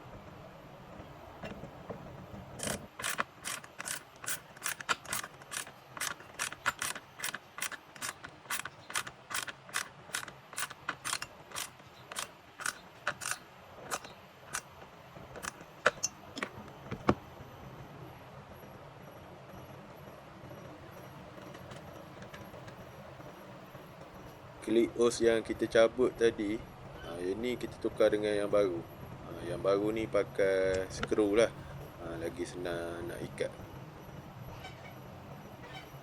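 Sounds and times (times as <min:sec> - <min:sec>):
ratchet clicking: 0:02.6 - 0:14.8, 0:15.4 - 0:17.1.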